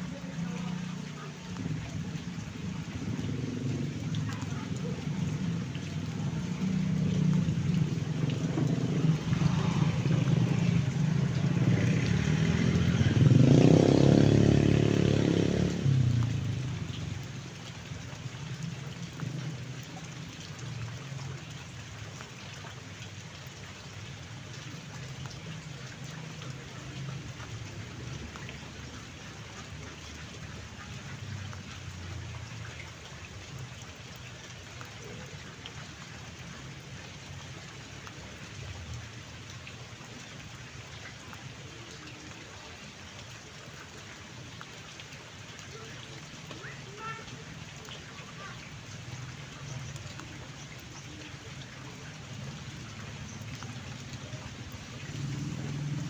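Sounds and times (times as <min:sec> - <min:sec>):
steady rain falling: 0:00.0 - 0:56.0
vehicle passing: 0:00.1 - 0:17.9, 0:51.7 - 0:56.0.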